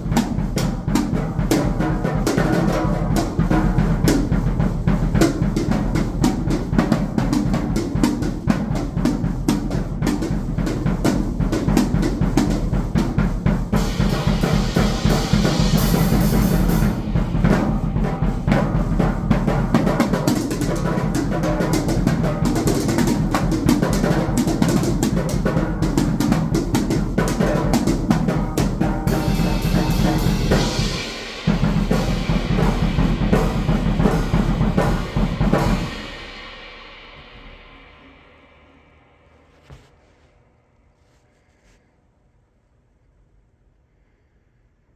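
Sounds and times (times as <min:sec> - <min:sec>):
drum kit playing rapidly: 0:00.0 - 0:37.6
cymbal wash: 0:13.2 - 0:23.7, 0:26.9 - 0:39.4.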